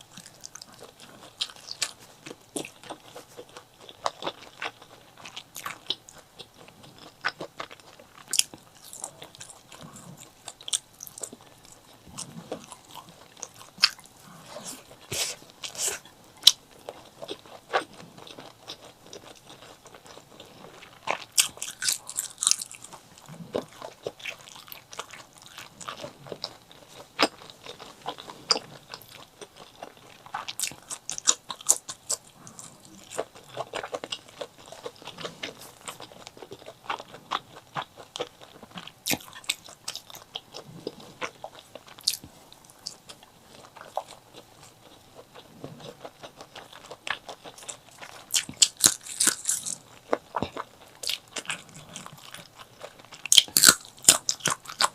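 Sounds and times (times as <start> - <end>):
crisp bites and crunches: 48.3 - 49.8.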